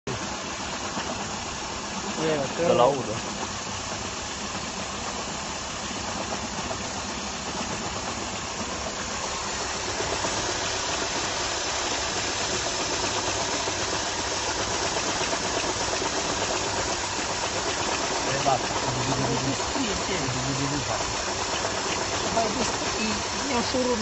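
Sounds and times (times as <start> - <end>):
car engine running: 1.6 - 24.0
odd mechanical noise: 6.1 - 24.0.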